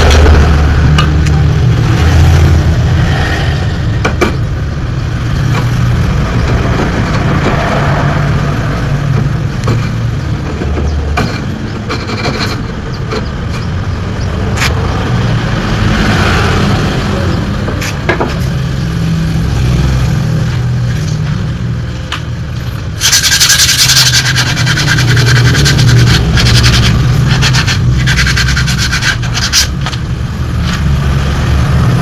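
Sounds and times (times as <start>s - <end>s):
rapid scraping and rubbing: 9.2s - 13.7s, 23.0s - 30.9s.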